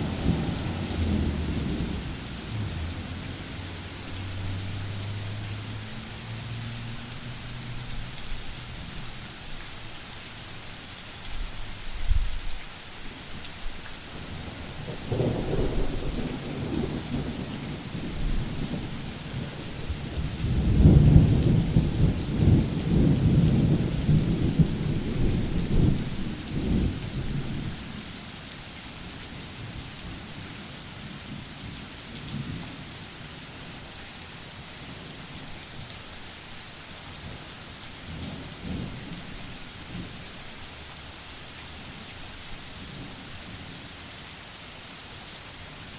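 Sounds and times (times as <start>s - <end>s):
thunder rumbling: 0.0s - 5.7s, 14.2s - 27.8s
steady rain falling: 0.0s - 45.9s.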